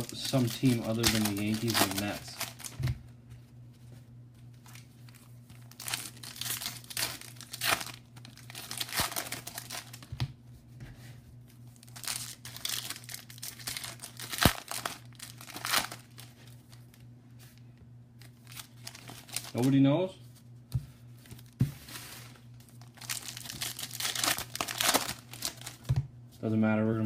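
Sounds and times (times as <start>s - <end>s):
foil wrappers crinkling and tearing: 0.0s - 2.8s, 4.6s - 10.1s, 11.8s - 17.0s, 18.2s - 19.8s, 21.3s - 25.9s.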